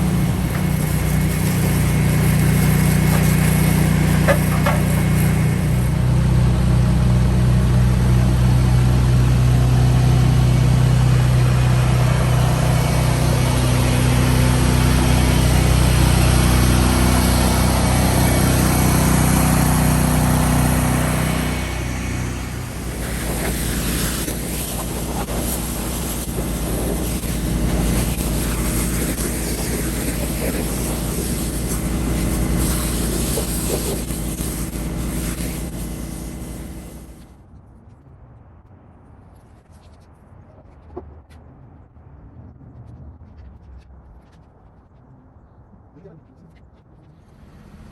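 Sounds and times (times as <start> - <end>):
broad hiss: 0.0 - 6.0, 20.6 - 37.2
engine running: 0.0 - 37.4, 47.2 - 47.9.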